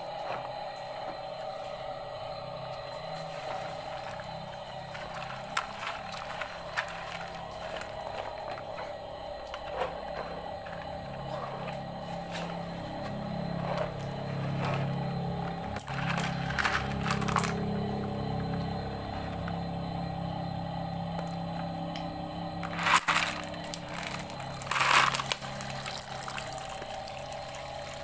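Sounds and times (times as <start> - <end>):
toy motor whirring: 3.3 - 8.6, 13.6 - 17.6, 22.6 - 26.8.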